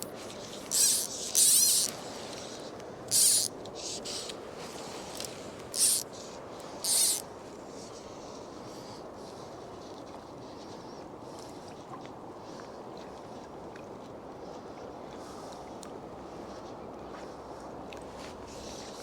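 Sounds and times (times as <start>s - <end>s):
fly line raspy zips: 0.0s - 2.0s, 3.1s - 4.3s, 5.0s - 6.0s, 6.8s - 7.2s
river noise: 0.0s - 7.6s
wind: 0.0s - 19.0s.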